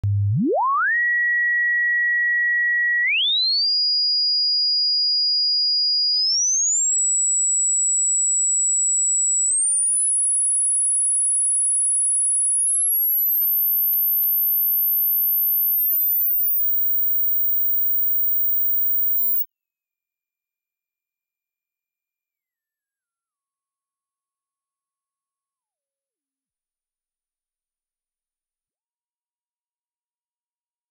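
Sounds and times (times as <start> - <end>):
pure sine tone whistle: 0.0 - 4.8, 6.4 - 19.5.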